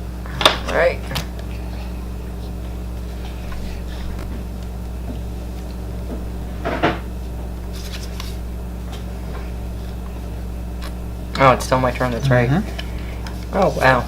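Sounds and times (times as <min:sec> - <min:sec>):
steady low hum: 0:00.0 - 0:14.0
playing cards handled on a table: 0:07.6 - 0:09.1.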